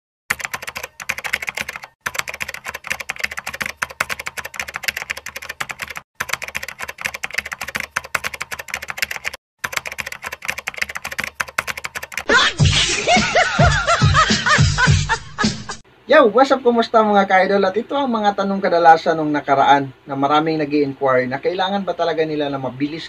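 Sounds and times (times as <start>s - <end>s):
keyboard typing: 0.3s - 12.3s.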